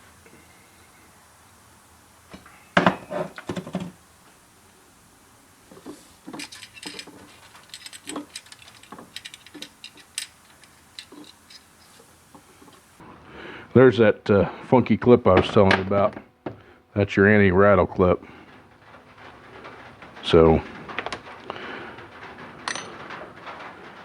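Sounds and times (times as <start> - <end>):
metal parts clicking and tapping: 5.7 - 12.9, 18.9 - 24.0
metal parts clanking: 5.8 - 13.0, 18.8 - 24.0.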